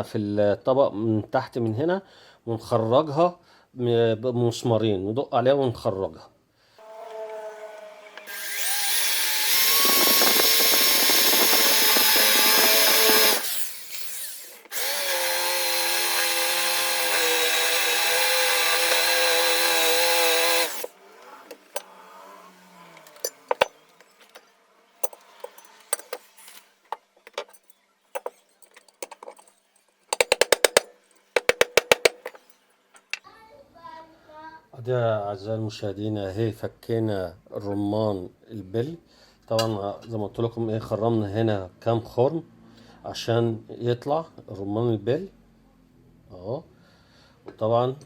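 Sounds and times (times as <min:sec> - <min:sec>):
electric drill whining: 0:06.8 - 0:24.4, 0:31.4 - 0:32.5
sharp knocks: 0:30.1 - 0:32.5.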